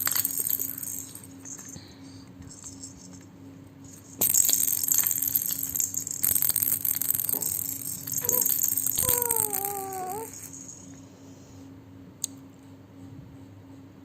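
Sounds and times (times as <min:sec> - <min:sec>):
toy rattle being shaken: 0:00.0 - 0:01.8, 0:02.5 - 0:03.2, 0:03.9 - 0:11.0
baby calling: 0:08.2 - 0:10.4.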